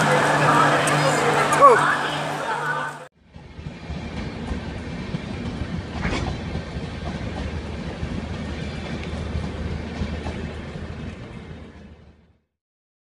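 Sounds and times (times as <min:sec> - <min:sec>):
train wheels rumbling on track: 0:03.2 - 0:12.4
wheels clicking over rail joints: 0:03.5 - 0:12.1.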